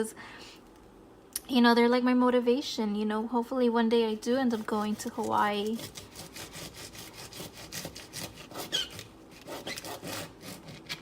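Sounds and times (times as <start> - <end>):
knife cutting green beans: 4.5 - 11.0.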